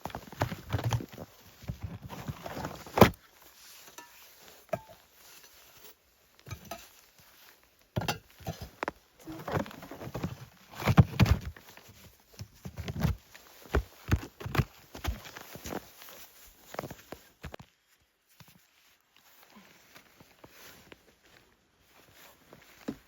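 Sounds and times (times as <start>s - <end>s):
footsteps crunching in snow: 11.5s - 23.0s.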